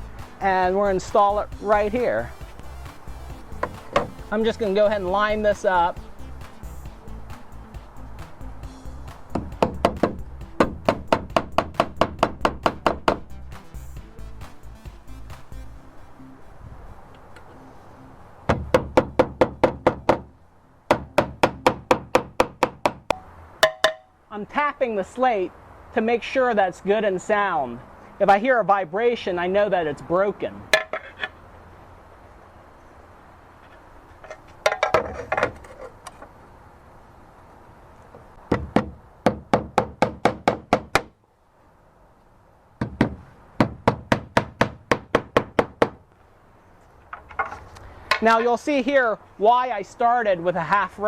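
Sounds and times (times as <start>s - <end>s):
hammer striking nails into slate: 3.6s - 4.2s, 9.3s - 13.2s, 18.5s - 20.3s, 20.9s - 24.0s, 38.5s - 41.1s, 42.8s - 46.0s.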